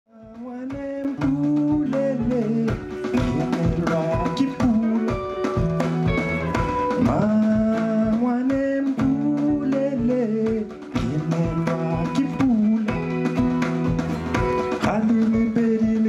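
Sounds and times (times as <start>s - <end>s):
guitar: 0.1s - 16.0s
steady drum beat: 0.1s - 16.0s.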